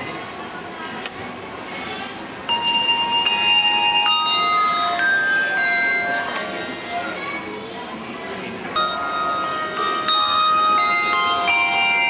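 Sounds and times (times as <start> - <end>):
handbells ringing: 2.5 - 7.5, 8.7 - 12.0.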